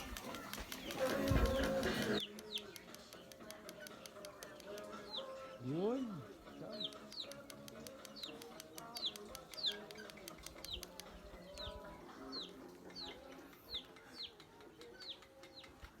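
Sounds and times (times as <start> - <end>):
faint rapid clicks: 0.0 - 5.0, 6.8 - 11.9
bird chirping: 0.0 - 16.0.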